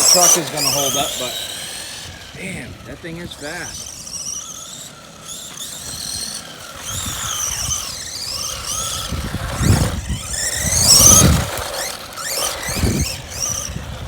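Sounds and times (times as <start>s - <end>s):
toy truck electric motor whine: 0.0s - 14.0s
tyres rumbling: 0.0s - 14.0s.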